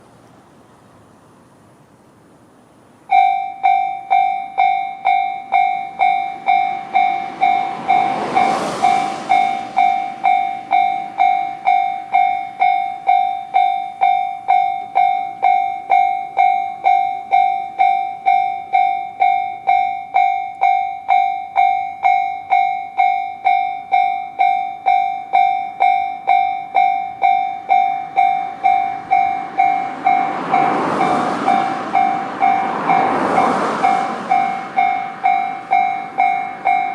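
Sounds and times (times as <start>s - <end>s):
approaching train noise: 0.0s - 36.9s
level crossing warning bell: 3.1s - 36.9s
whoosh: 6.5s - 10.8s.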